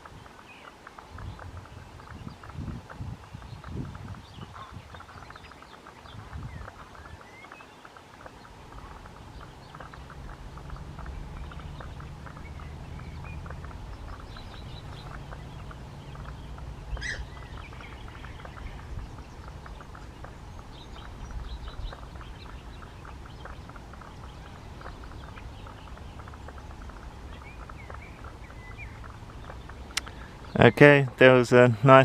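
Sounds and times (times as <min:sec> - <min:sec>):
birds chirping: 0:00.0 - 0:32.0
low rumble: 0:08.5 - 0:30.6
sharp bird call: 0:08.7 - 0:30.8.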